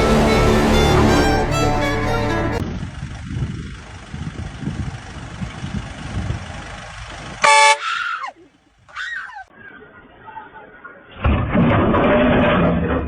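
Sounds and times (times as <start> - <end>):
car horn honk: 0.0 - 2.6, 7.4 - 8.0
vehicle running: 0.0 - 8.2
short falling squeals: 7.4 - 9.5.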